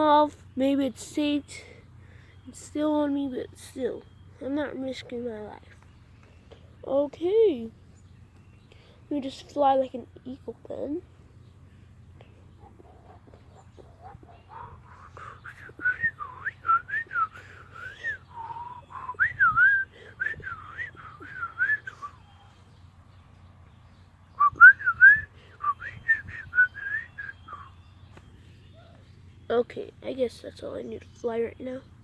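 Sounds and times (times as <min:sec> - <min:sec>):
person whistling a tune: 0:15.4 - 0:22.3, 0:24.4 - 0:27.7.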